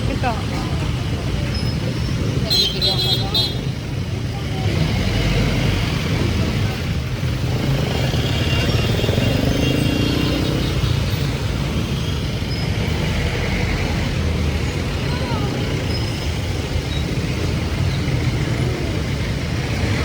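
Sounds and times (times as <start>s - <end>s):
traffic and engine noise: 0.0s - 20.0s.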